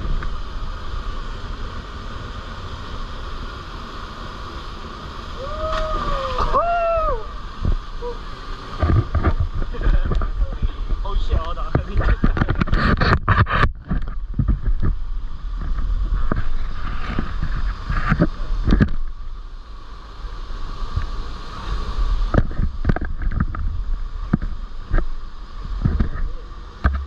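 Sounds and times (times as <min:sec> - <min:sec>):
low rumble on microphone: 0:00.0 - 0:03.6, 0:05.0 - 0:27.0
waterfall rushing water: 0:00.0 - 0:11.8
sharp splashes and knocks: 0:05.6 - 0:06.6.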